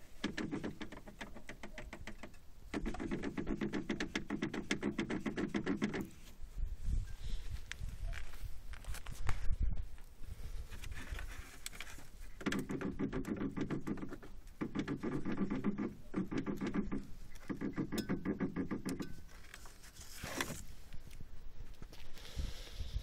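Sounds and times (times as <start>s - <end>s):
rapid rattling knocks from car: 0.2s - 6.1s.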